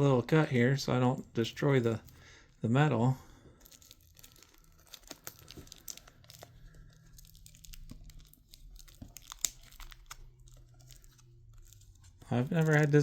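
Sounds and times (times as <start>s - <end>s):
plastic shrink-wrap crinkling: 3.4s - 13.0s
scissors cutting plastic: 7.1s - 13.0s.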